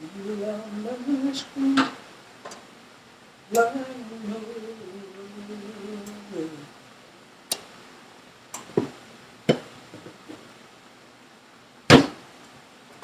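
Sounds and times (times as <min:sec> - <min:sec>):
person singing: 0:00.0 - 0:02.0, 0:03.5 - 0:06.8.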